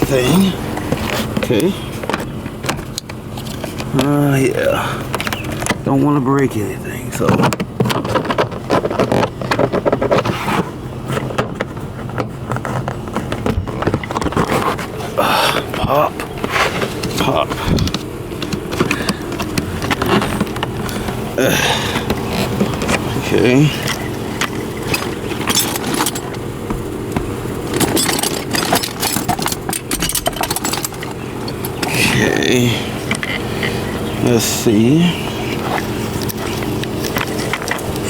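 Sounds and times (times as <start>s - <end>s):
steady low hum: 0.0s - 38.0s
plastic trim panels scraping and clicking: 5.0s - 6.5s, 7.2s - 32.3s, 33.0s - 34.0s, 35.3s - 38.0s
hands clicking plastic trim panels: 15.4s - 23.1s.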